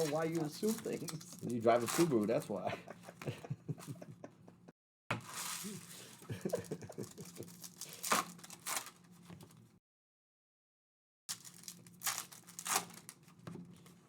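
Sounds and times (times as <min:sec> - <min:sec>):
card pack wrappers crinkling and tearing: 0:00.0 - 0:02.6, 0:05.2 - 0:09.5, 0:11.3 - 0:14.0.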